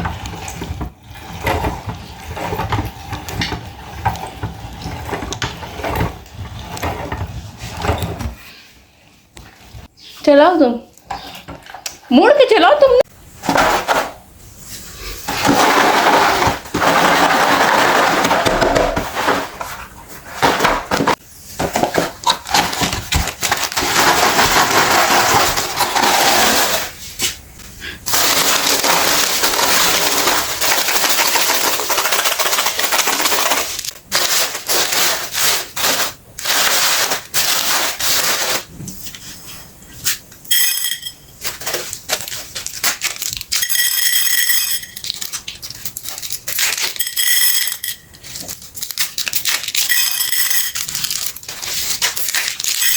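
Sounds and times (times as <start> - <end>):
meat grinder crunching: 28.1 - 37.9, 48.2 - 49.9, 50.8 - 52.9.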